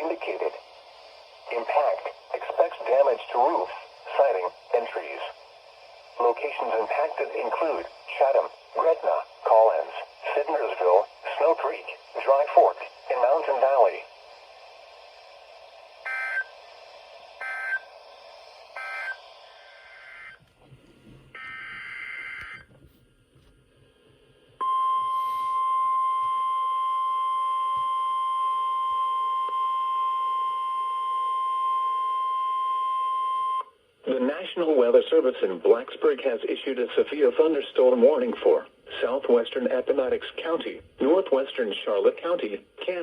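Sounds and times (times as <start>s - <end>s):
receiver hiss: 0.0s - 22.7s, 23.3s - 43.0s
steady warning alarm tone: 15.9s - 18.0s, 18.7s - 20.4s, 21.4s - 22.6s
warbling data bursts: 16.0s - 16.6s, 17.4s - 17.9s, 18.7s - 20.4s.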